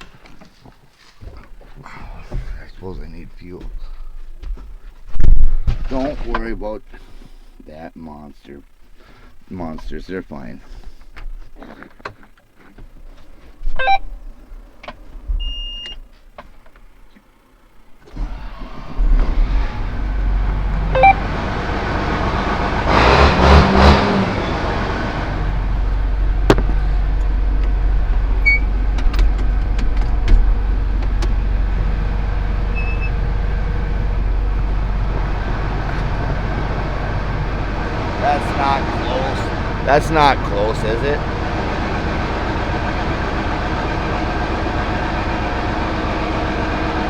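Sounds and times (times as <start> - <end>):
diesel engine starting and running: 0.0 - 11.2, 11.8 - 47.0
short beep: 13.8 - 14.1, 21.0 - 21.2, 32.8 - 33.2.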